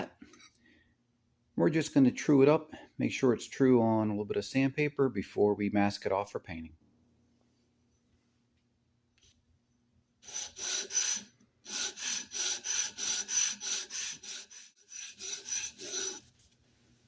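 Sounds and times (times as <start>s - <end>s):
metal scraping on sandpaper: 11.8s - 16.5s.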